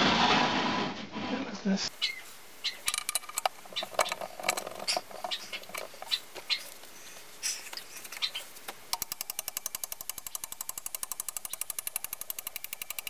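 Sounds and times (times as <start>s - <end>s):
small metal parts clicking: 2.8s - 6.2s, 8.9s - 13.0s
fast even ticking: 8.9s - 13.0s.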